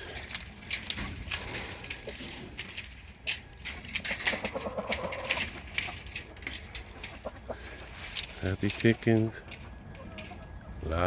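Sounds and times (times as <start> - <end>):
hens clucking: 4.0 - 11.0.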